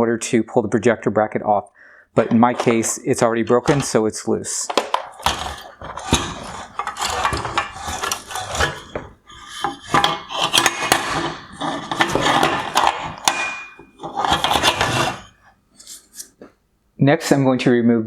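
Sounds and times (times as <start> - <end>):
plastic parts knocking and scraping: 2.2 - 16.5.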